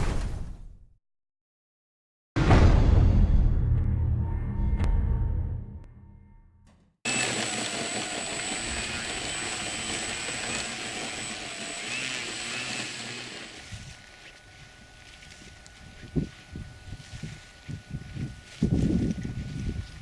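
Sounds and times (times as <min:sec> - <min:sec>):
model plane motor whine: 0:07.1 - 0:20.0.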